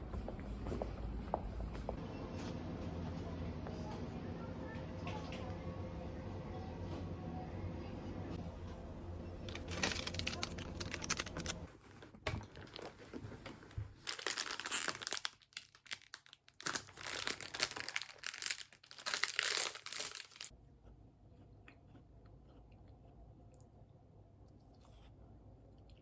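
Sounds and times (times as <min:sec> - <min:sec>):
crinkling and rustling: 0:08.4 - 0:20.5.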